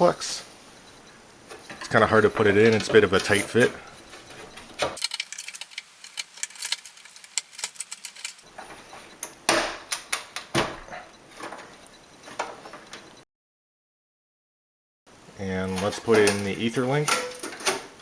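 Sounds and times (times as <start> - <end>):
small clicks and knocks: 4.8 - 8.5.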